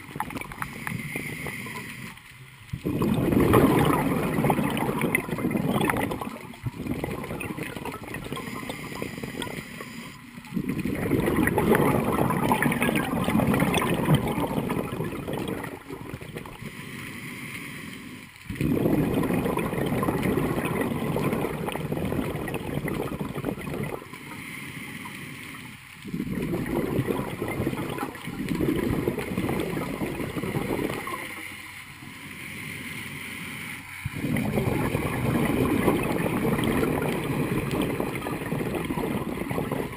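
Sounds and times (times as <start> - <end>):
diver inhaling through regulator: 0.0 - 2.2, 8.0 - 12.8, 16.3 - 19.4, 23.8 - 27.6, 28.8 - 38.6
gurgling exhaled bubbles: 0.0 - 17.0, 18.3 - 39.9.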